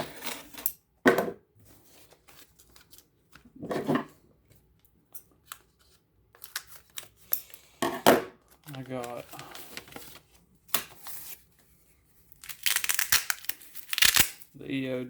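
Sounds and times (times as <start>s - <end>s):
packaging rustling and clicking: 8.4s - 11.4s, 12.3s - 14.5s.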